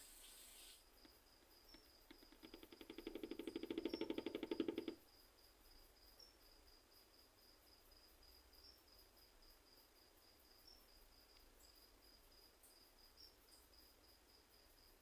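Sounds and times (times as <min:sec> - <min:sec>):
katydid chirping: 0:00.3 - 0:05.0.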